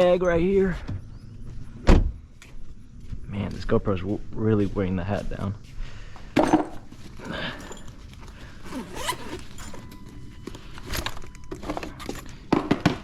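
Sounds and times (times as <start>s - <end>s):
tools clicking and rustling: 6.4s - 13.0s
zipper pulled open: 7.6s - 10.1s.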